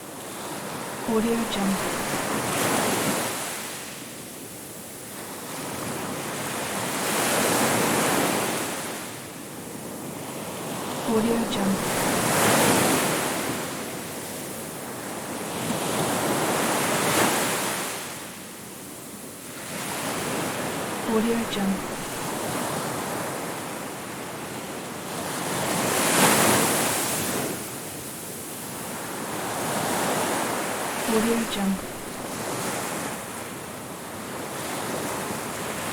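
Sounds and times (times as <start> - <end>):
ocean waves breaking on beach: 0.0 - 35.9
ocean waves breaking: 0.2 - 3.9, 10.0 - 14.1, 19.6 - 23.4, 28.7 - 33.4.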